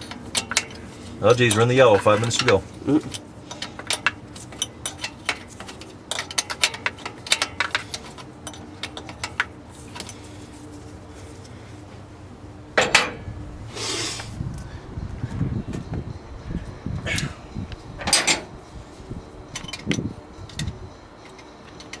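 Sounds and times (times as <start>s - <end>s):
hand tools clicking on metal: 0.0s - 10.2s, 19.6s - 22.0s
faint steady hum: 0.0s - 22.0s.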